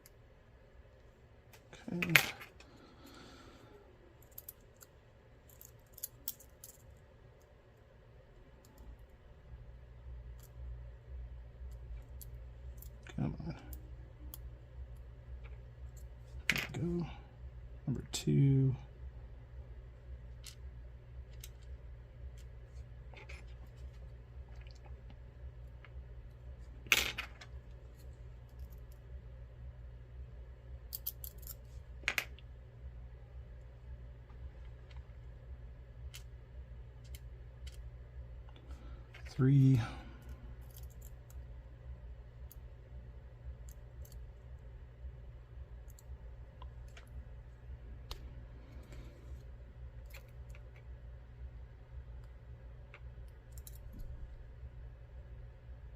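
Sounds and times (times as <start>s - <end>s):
metallic clicks of lock parts: 5.5s - 7.5s, 30.9s - 32.4s, 40.2s - 41.4s, 43.6s - 44.2s, 53.3s - 54.1s.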